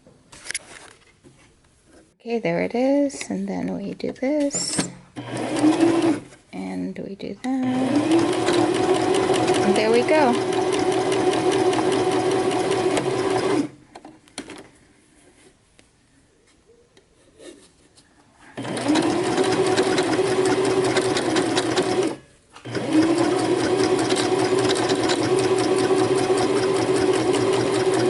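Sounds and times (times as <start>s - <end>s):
electric sewing machine stitching: 5.2s - 6.3s, 7.6s - 13.8s, 18.6s - 28.0s.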